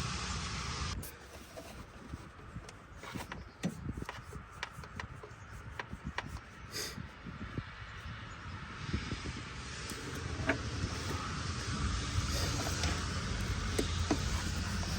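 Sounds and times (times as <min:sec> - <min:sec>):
tool clicks and hose rubbing: 0:01.0 - 0:06.9, 0:09.9 - 0:14.9.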